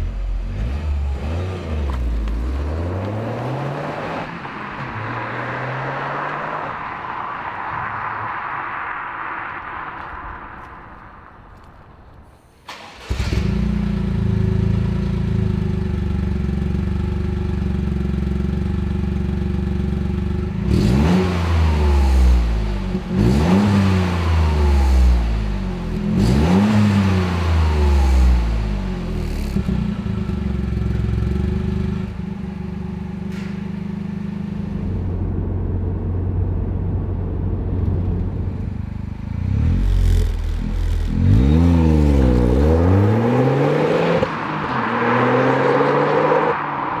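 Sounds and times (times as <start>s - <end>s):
engine revving: 0.0s - 6.8s, 20.5s - 32.3s, 34.5s - 47.0s
car engine idling: 28.8s - 41.2s.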